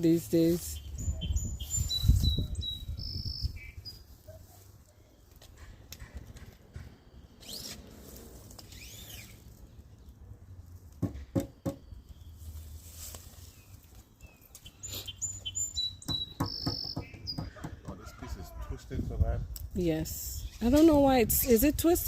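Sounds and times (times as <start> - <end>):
birds chirping: 0.0 - 7.9, 8.6 - 19.0
sharp knocks: 11.0 - 11.9, 16.0 - 18.0.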